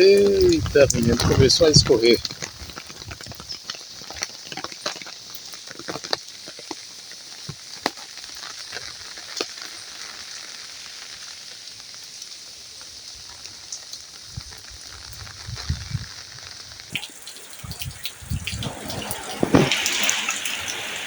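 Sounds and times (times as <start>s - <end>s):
steady rain hissing: 0.0s - 21.0s.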